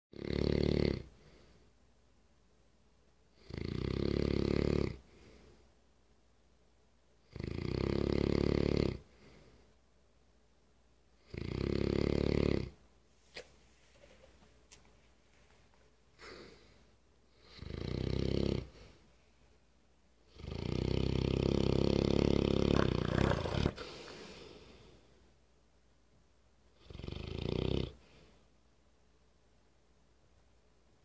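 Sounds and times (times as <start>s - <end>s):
dog snoring loudly: 0.1s - 1.1s, 3.4s - 5.0s, 7.3s - 9.0s, 11.2s - 12.8s, 17.4s - 18.7s, 20.3s - 24.0s, 26.8s - 28.0s
dog breathing: 22.7s - 24.8s.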